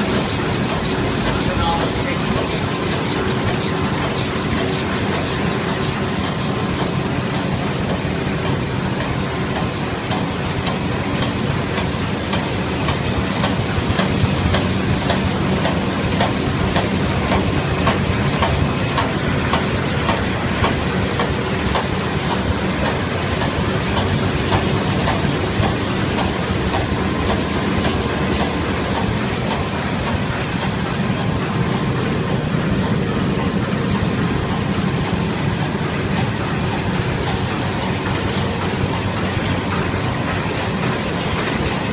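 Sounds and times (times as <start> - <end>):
laminating machine running: 0.0 - 41.9
rapid irregular clicking: 0.0 - 41.9.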